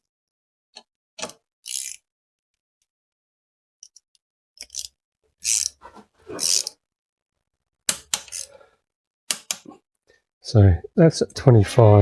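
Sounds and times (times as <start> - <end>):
torque wrench ratcheting: 1.6 - 2.0, 4.6 - 5.8, 6.4 - 6.7, 8.1 - 8.5.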